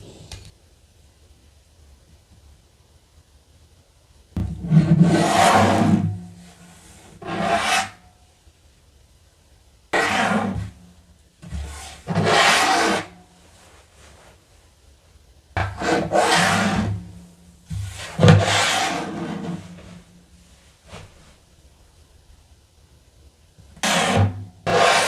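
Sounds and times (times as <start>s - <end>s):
rubbing and scraping: 4.4s - 8.0s, 10.0s - 10.8s, 11.5s - 14.4s, 15.6s - 17.2s, 17.8s - 20.2s, 23.8s - 25.0s.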